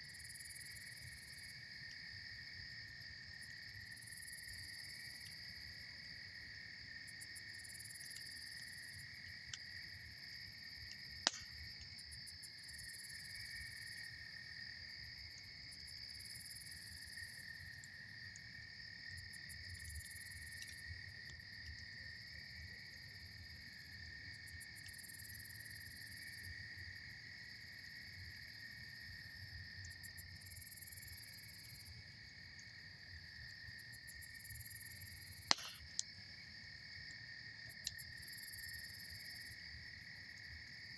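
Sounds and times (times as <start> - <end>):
insects trilling: 2.4 - 40.9
campfire popping: 8.1 - 12.8, 35.3 - 36.2.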